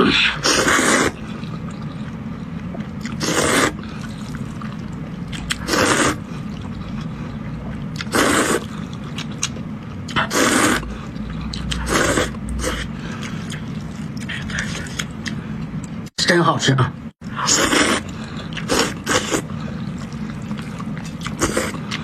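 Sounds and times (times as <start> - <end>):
steady low hum: 0.0 - 22.0
noodles being slurped: 3.1 - 4.8, 5.5 - 6.3, 8.0 - 9.2, 17.5 - 22.0.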